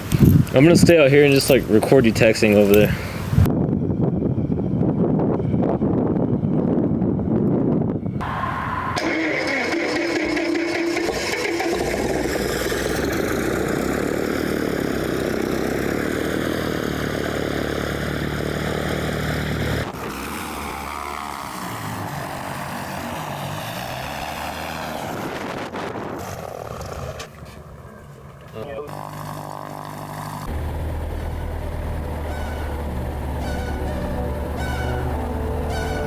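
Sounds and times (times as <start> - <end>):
propeller airplane engine drone: 0.0 - 36.0.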